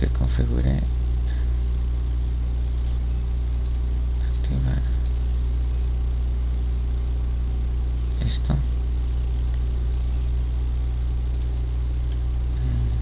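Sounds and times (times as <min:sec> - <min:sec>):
high-pitched whine: 0:00.0 - 0:13.0
low electrical hum: 0:00.0 - 0:13.0
constant hiss: 0:07.9 - 0:13.0
man saying a word: 0:12.6 - 0:13.0.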